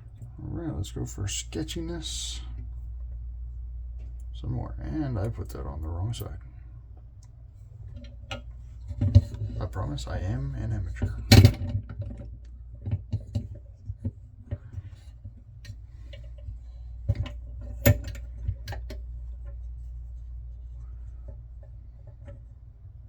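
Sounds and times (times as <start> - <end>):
steady low hum: 0.0 - 23.0
metal parts clicking and tapping: 11.2 - 12.2.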